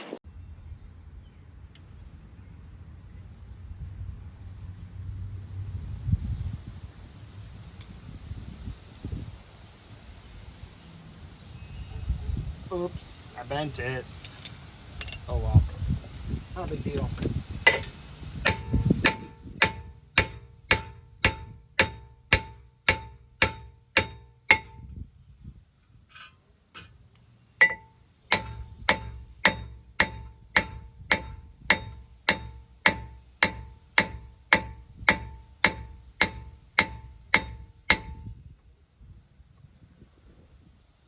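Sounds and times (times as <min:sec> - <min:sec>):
hammer striking metal rotor: 0:17.6 - 0:24.8, 0:27.6 - 0:38.2.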